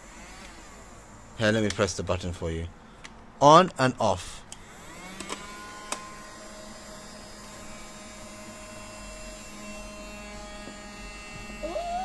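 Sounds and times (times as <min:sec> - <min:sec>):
toy vacuum motor humming: 0:00.0 - 0:01.4, 0:04.6 - 0:12.0.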